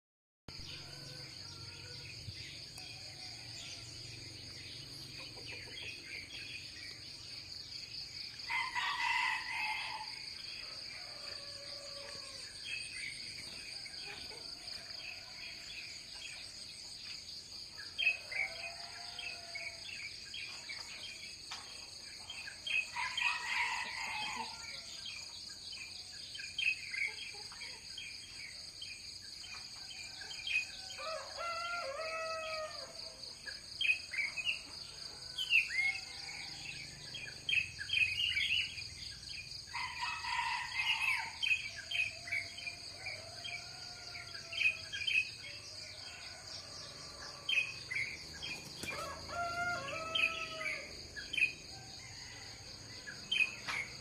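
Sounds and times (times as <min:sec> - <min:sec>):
small birds chirping: 0:01.9 - 0:07.5
roosters crowing: 0:08.4 - 0:12.6, 0:18.1 - 0:19.8, 0:22.9 - 0:24.9, 0:29.8 - 0:33.3, 0:39.7 - 0:44.9, 0:45.6 - 0:54.0.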